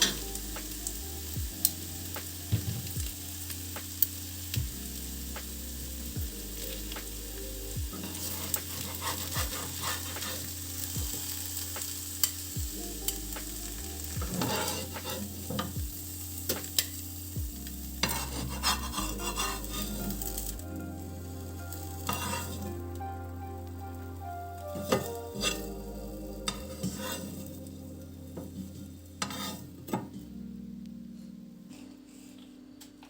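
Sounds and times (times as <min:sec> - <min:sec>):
food sizzling in a frying pan: 0:00.0 - 0:20.5, 0:21.4 - 0:22.8, 0:24.8 - 0:28.5
utensil scraping a pan: 0:08.0 - 0:10.6, 0:14.3 - 0:15.8, 0:18.0 - 0:20.2, 0:22.1 - 0:22.6, 0:29.2 - 0:30.1.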